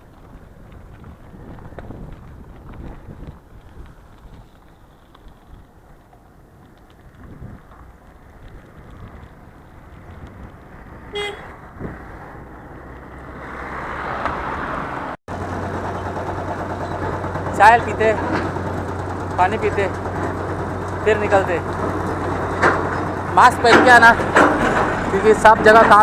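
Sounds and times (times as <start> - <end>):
road traffic: 0.0 - 26.0
vehicle passing: 8.2 - 26.0
vehicle horn toot: 11.1 - 11.5.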